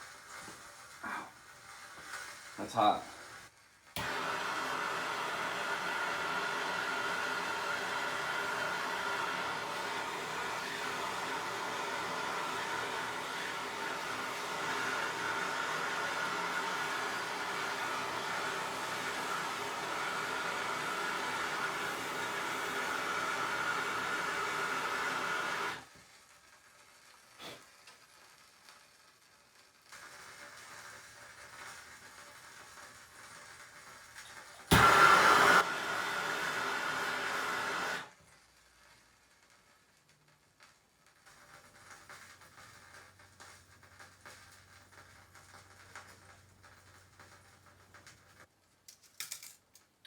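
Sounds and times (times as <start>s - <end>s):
torch flame hissing: 0.0s - 26.0s, 27.1s - 28.7s, 29.8s - 38.2s.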